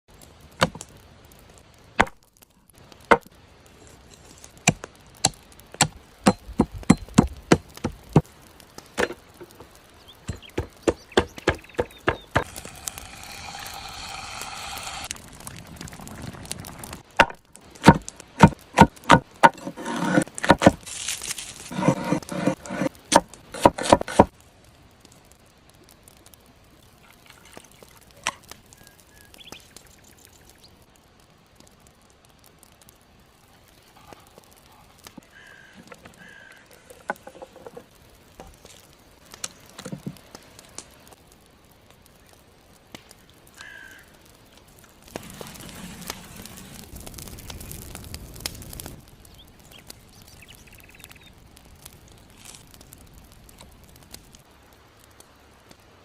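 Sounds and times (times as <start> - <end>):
knife chopping on wooden board: 23.6 - 24.3.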